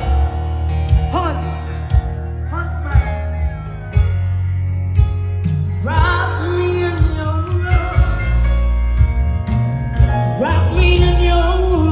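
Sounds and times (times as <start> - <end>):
band with heavy bass and drums: 0.0 - 11.9.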